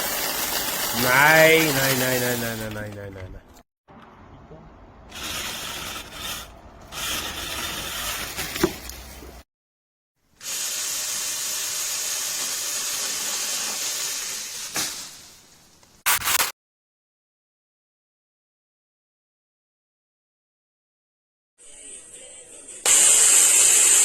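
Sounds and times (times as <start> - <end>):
battery chainsaw running: 0.0 - 2.8, 5.1 - 8.7, 10.4 - 14.6, 22.9 - 24.0.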